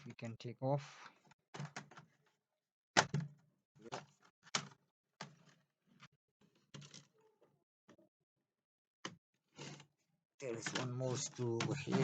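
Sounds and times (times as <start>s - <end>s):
plastic parts clicking and knocking: 1.1s - 2.4s, 3.0s - 7.3s, 10.4s - 12.0s.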